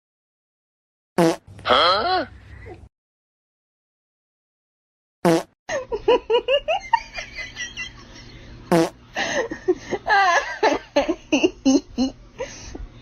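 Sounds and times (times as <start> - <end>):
people laughing: 5.7 - 12.6.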